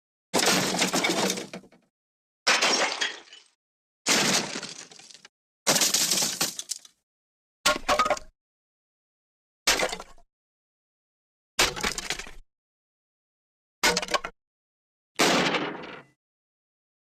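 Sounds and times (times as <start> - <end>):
crash with breaking glass: 0.4 - 1.5, 2.5 - 3.5, 4.1 - 6.8.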